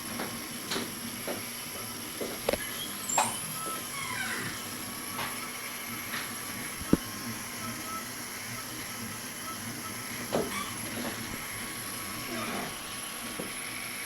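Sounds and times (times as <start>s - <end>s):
machine hiss with high whine: 0.0s - 14.0s
sliding motor tones: 0.0s - 14.0s.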